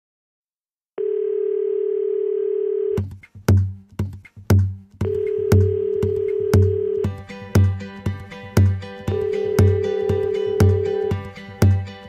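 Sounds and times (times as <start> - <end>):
telephone dial tone: 1.0 - 3.0, 5.1 - 7.1, 9.1 - 11.1
heavy kick-drum beats: 3.0 - 12.0.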